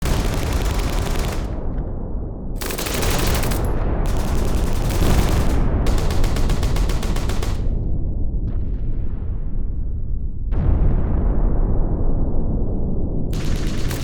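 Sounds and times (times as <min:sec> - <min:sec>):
automatic gunfire bursts: 0:00.0 - 0:01.7, 0:02.6 - 0:07.8, 0:13.4 - 0:14.0
continuous low rumble: 0:00.0 - 0:14.0.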